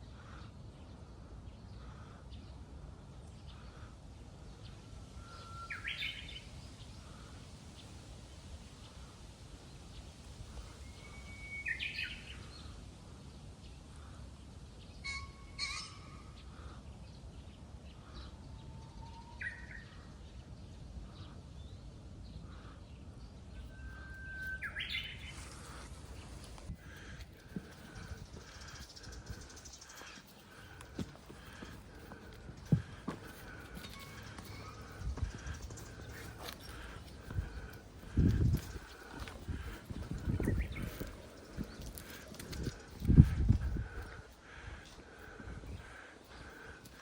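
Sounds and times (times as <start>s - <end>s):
bush warbler singing: 23.5s - 47.0s
wind rumbling on microphone: 24.2s - 46.9s.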